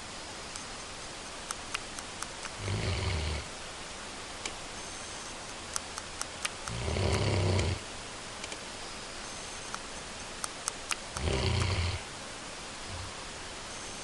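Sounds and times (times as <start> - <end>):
pet snoring: 2.6 - 3.5, 6.7 - 7.8, 11.2 - 12.1.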